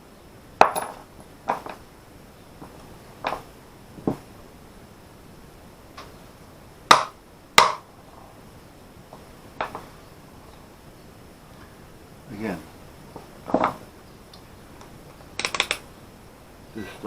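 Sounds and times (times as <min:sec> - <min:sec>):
hand tools clicking and knocking: 0:15.4 - 0:15.8.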